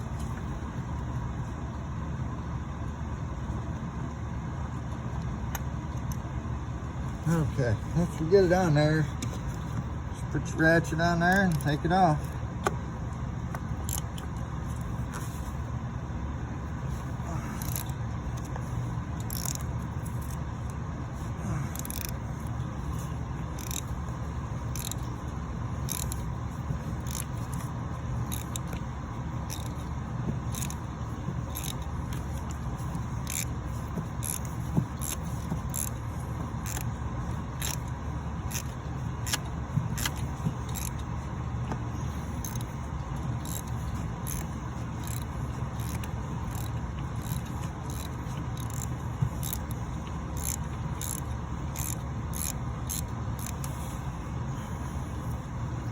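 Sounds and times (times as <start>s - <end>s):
ratchet clicking: 13.8s - 14.9s, 17.5s - 18.6s, 19.2s - 20.8s, 21.7s - 41.0s, 42.4s - 53.9s.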